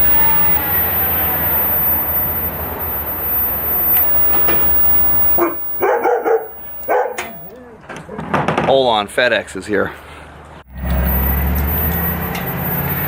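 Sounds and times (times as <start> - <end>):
dog barking: 5.4 - 7.4.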